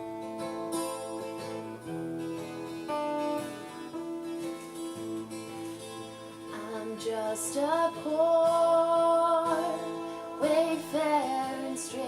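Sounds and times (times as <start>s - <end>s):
acoustic guitar: 0.0s - 12.0s
person singing long notes: 6.6s - 12.0s.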